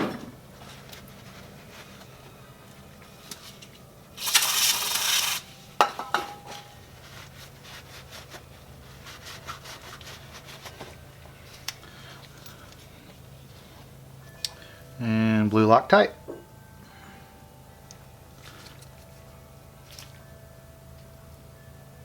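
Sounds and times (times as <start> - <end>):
loud hiss: 4.2 - 5.6.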